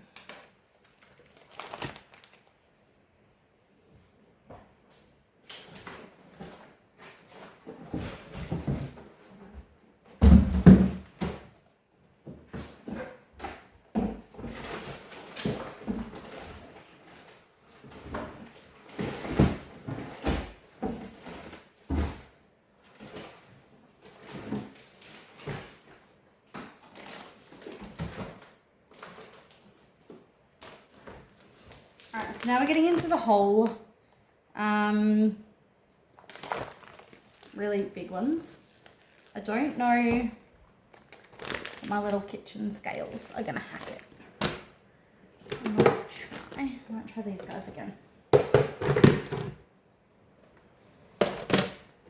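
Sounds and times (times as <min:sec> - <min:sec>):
packs and boxes knocking: 0:10.2 - 0:11.5, 0:48.3 - 0:49.6.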